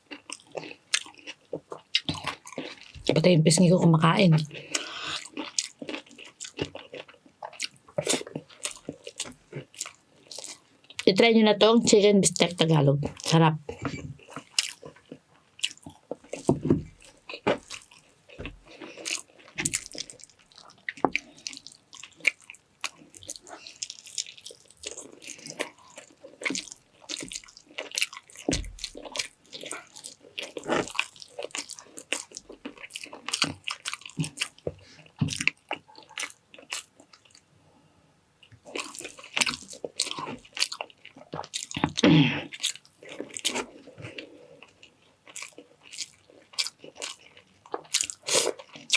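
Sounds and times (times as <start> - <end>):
person chewing food: 0.0 - 3.2, 4.2 - 11.0, 13.1 - 37.5, 38.4 - 48.9.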